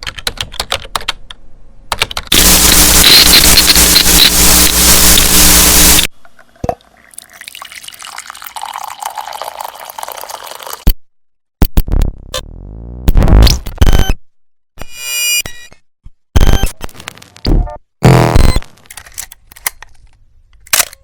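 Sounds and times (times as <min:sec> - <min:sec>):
loud burst: 0:02.3 - 0:06.1.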